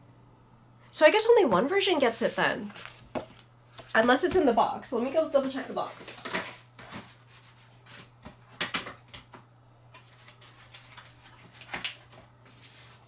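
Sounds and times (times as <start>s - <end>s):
cardboard and paper rustling: 2.0s - 4.5s, 5.3s - 9.0s, 10.0s - 13.0s.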